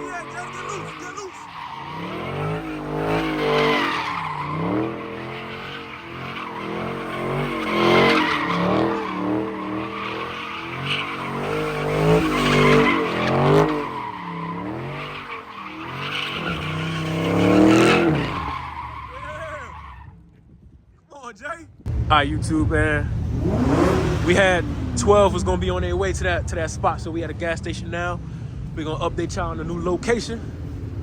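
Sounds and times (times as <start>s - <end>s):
tyres squealing: 0.0s - 20.2s
car engine revving: 0.0s - 20.3s, 21.9s - 31.0s.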